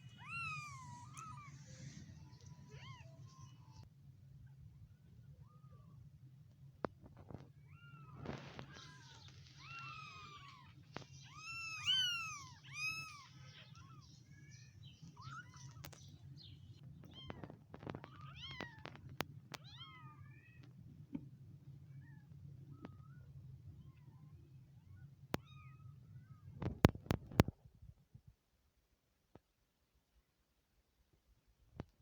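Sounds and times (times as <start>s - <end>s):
kittens mewing: 0.0s - 3.8s, 7.6s - 16.0s.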